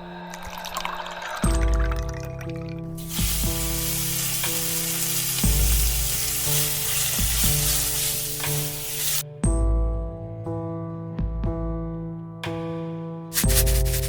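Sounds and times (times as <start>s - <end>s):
soft background music: 0.0s - 14.0s
food sizzling in frying pan: 3.0s - 9.2s.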